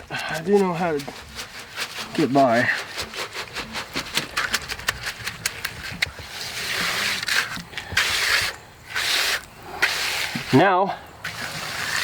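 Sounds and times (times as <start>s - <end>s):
rasping scrapes on concrete: 0.0s - 12.0s.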